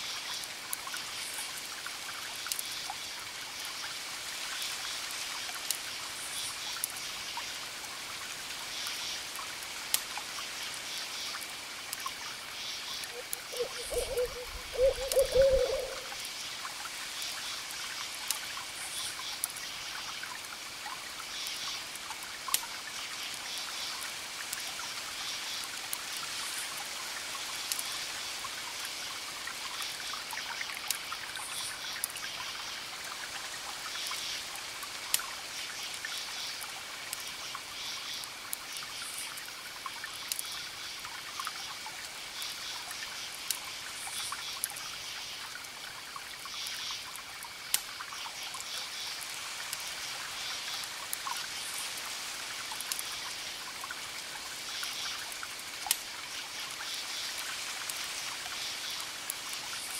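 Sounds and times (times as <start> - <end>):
wood fire crackles: 0.3 - 15.0, 15.6 - 32.2, 32.9 - 59.9
water trickling: 11.3 - 23.0
owl hooting: 13.1 - 16.2
high chirping pulses: 13.2 - 16.1.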